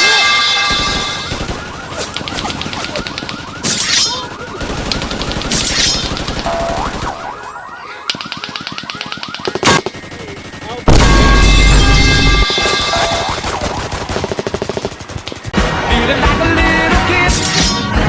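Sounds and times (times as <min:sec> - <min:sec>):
car alarm warbling: 0:00.0 - 0:09.9, 0:11.0 - 0:14.0
rapid rattling: 0:12.4 - 0:15.6.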